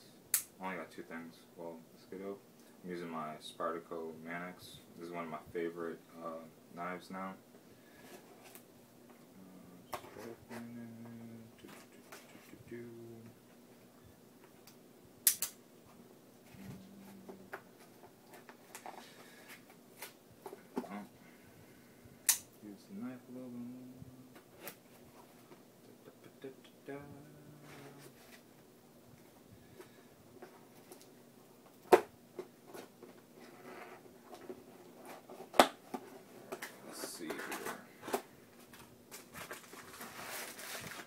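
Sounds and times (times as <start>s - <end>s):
package rustling and scraping: 32.7s - 41.0s.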